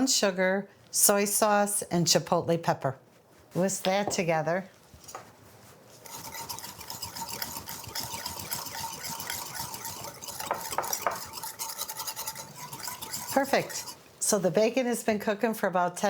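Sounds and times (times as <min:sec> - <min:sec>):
wire whisk beating in a bowl: 0:06.0 - 0:14.0.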